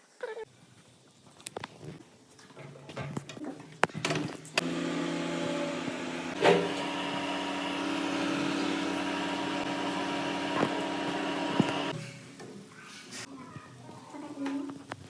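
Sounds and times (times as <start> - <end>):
microwave electrical hum: 4.5 - 12.0
microwave clunk: 6.0 - 11.9.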